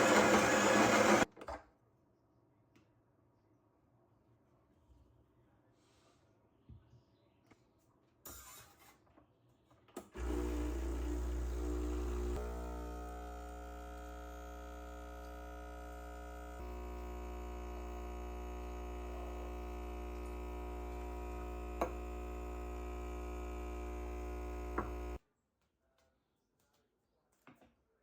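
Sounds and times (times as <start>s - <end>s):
electrical hum: 10.2s - 25.2s.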